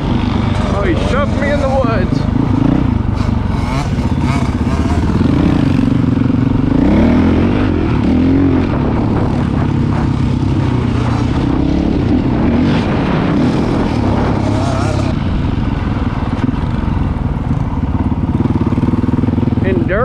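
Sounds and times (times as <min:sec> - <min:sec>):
dirt bike engine running: 0:00.0 - 0:20.0.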